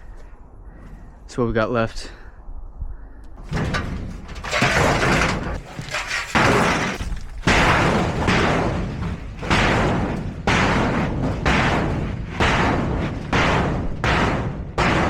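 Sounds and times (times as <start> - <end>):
sheet metal banging and rattling: 3.4 - 15.0.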